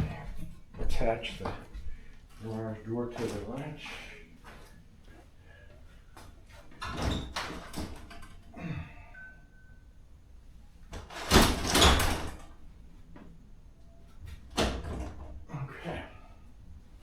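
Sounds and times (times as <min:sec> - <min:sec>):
garage door clattering: 0:06.7 - 0:08.5, 0:10.9 - 0:12.7, 0:14.3 - 0:15.5
garage door rattling thud: 0:11.0 - 0:12.6, 0:14.4 - 0:15.5.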